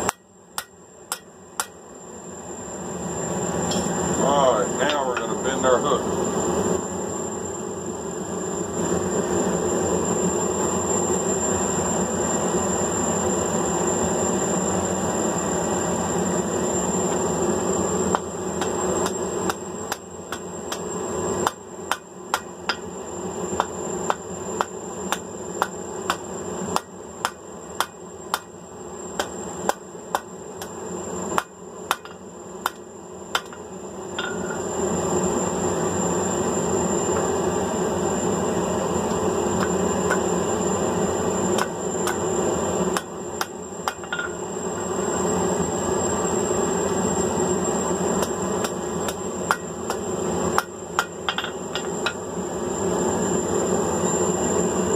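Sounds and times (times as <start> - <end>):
hammer striking steel on anvil: 0.0 - 1.8, 21.4 - 22.9, 23.6 - 26.2, 26.8 - 28.5, 29.2 - 30.7, 31.4 - 33.6, 34.2 - 34.6, 41.6 - 42.2, 43.0 - 44.4, 48.2 - 50.0, 50.6 - 52.2.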